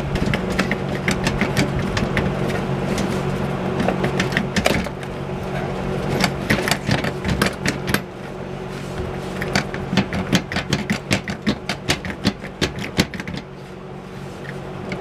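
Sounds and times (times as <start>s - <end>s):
fan blade clicking and knocking: 0.0s - 5.2s, 6.0s - 8.1s, 9.4s - 13.5s, 14.4s - 15.0s
low hum: 0.0s - 15.0s.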